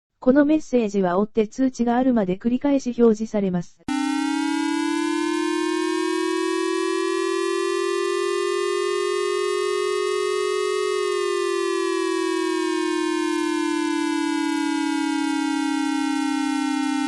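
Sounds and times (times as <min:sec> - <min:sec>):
synthesized siren wail: 0:03.9 - 0:17.0.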